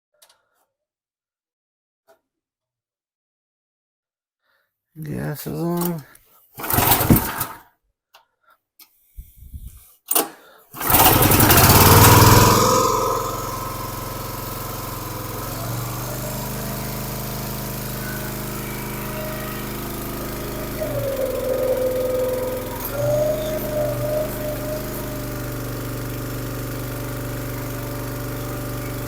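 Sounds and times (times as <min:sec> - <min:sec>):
small engine starting and running: 0:06.6 - 0:07.6, 0:10.1 - 0:29.0.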